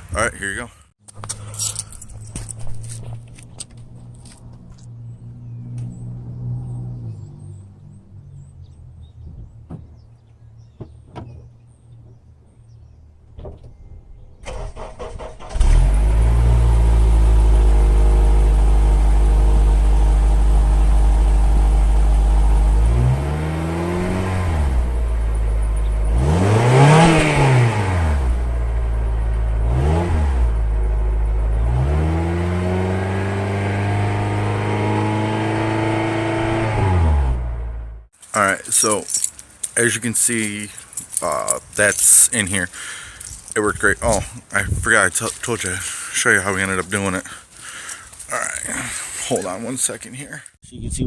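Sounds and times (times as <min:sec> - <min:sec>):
engine revving: 0:03.9 - 0:08.7, 0:14.4 - 0:38.1
car engine idling: 0:14.8 - 0:23.2, 0:23.9 - 0:26.5, 0:27.3 - 0:31.9, 0:37.3 - 0:50.4.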